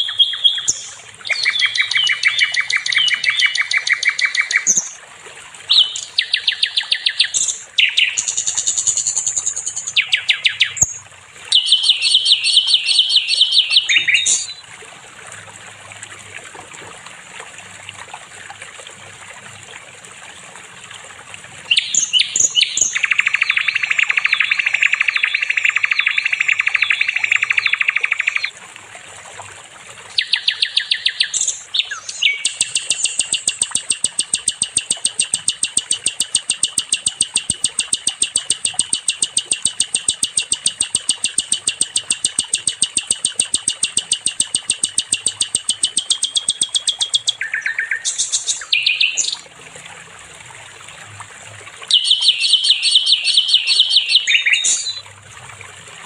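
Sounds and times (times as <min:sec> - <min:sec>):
bird song high repeated notes: 0:00.0 - 0:05.0, 0:05.7 - 0:14.6, 0:21.7 - 0:28.5, 0:30.2 - 0:49.4, 0:51.9 - 0:55.0
buzzy bird trill: 0:00.0 - 0:05.0, 0:05.7 - 0:14.6, 0:21.7 - 0:28.5, 0:30.2 - 0:49.4, 0:51.9 - 0:55.0
rapid chattering bird notes: 0:00.0 - 0:05.0, 0:05.7 - 0:14.6, 0:21.7 - 0:28.5, 0:30.2 - 0:49.4.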